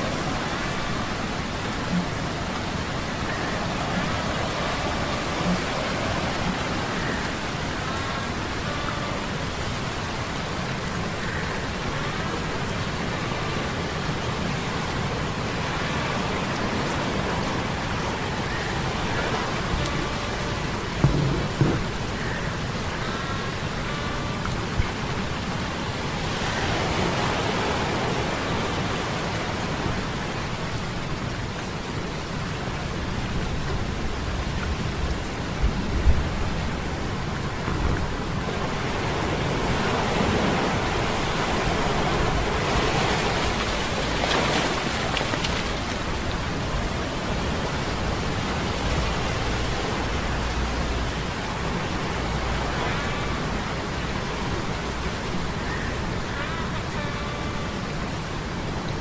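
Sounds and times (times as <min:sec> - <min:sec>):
rain and surf rushing: 0:00.0 - 0:59.0
low thump: 0:21.0 - 0:21.9.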